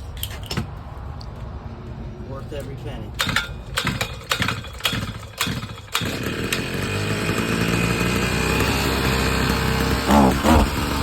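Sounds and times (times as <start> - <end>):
two-stroke engine running: 3.2 - 11.0.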